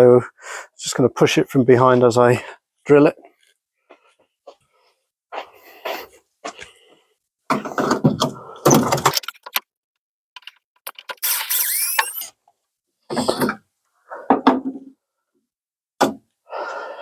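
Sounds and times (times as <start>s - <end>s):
power drill drilling: 10.4s - 12.3s.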